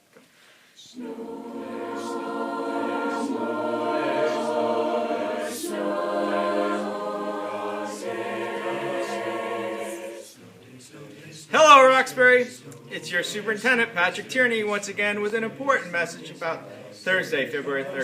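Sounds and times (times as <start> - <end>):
choir singing sustained chords: 0.9 - 10.4.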